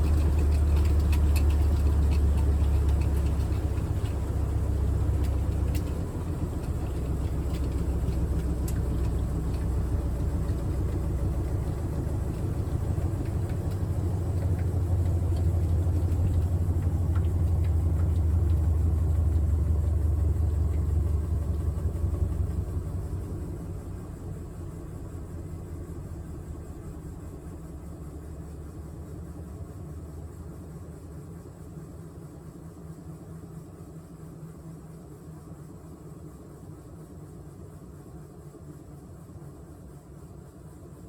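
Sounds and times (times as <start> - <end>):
washing machine rumbling: 0.0 - 30.5.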